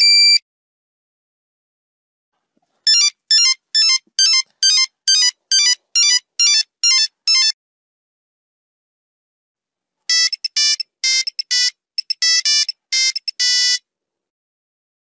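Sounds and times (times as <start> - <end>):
mobile phone ringtone beeping: 2.9 - 7.6, 10.1 - 13.8.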